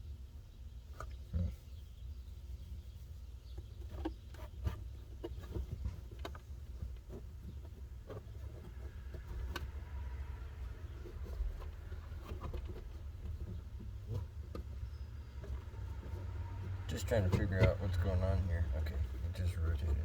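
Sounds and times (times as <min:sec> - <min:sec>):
low steady rumble: 0:00.0 - 0:20.0
plastic console knocks and clicks: 0:10.8 - 0:20.0.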